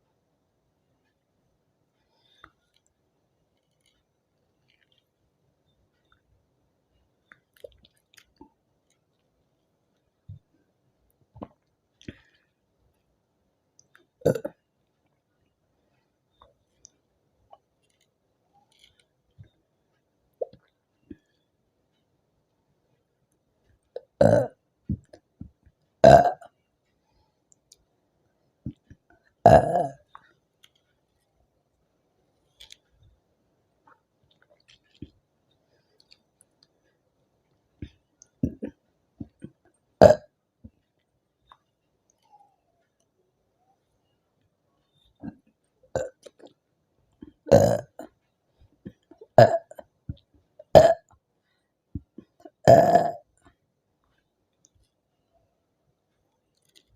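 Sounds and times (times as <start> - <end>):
faint clicks: 1.9 - 13.1
woman belching loudly: 14.2 - 14.6, 26.0 - 26.4, 29.5 - 30.0, 40.0 - 40.3, 47.5 - 48.0, 49.4 - 49.8, 50.7 - 51.0, 52.6 - 53.2
woman burping: 14.2 - 14.6, 24.1 - 24.6, 26.0 - 26.4, 29.4 - 30.0, 40.0 - 40.3, 46.0 - 46.2, 47.5 - 48.1, 49.4 - 49.8, 50.7 - 51.1, 52.5 - 53.2.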